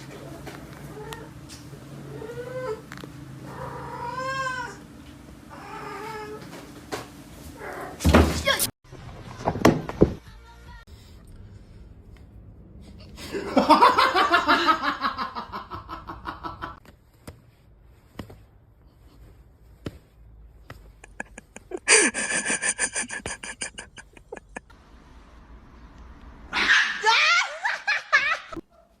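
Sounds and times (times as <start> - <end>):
people laughing: 13.2 - 16.8, 21.0 - 24.7.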